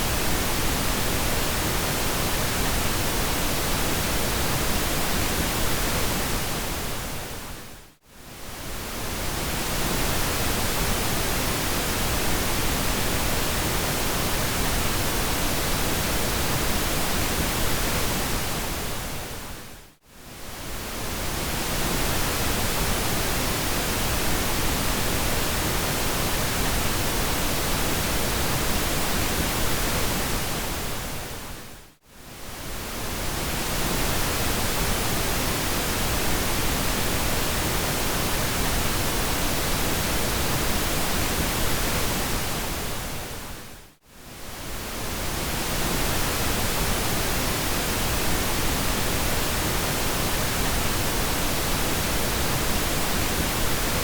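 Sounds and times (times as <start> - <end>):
pink noise hiss: 44.2 - 54.0.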